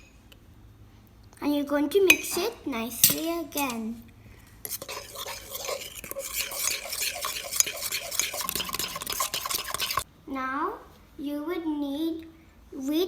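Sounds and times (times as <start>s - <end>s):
fork scraping in a mug: 2.1s - 3.8s, 4.4s - 10.0s.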